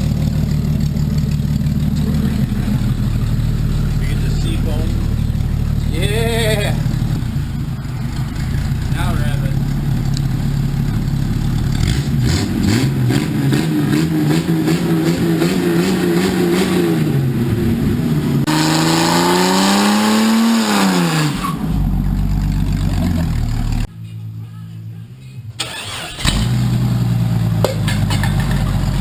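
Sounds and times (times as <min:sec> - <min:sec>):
car engine revving: 0:00.0 - 0:23.9, 0:25.5 - 0:29.0.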